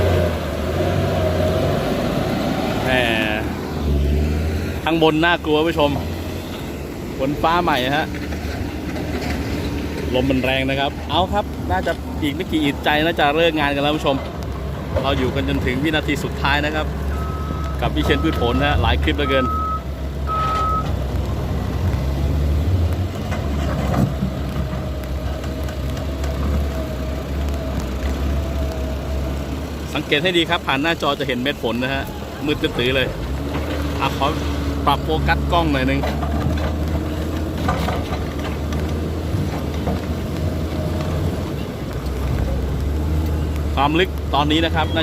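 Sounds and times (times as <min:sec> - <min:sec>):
diesel engine droning: 0:00.0 - 0:45.0
reversing alarm beep: 0:17.1 - 0:20.8.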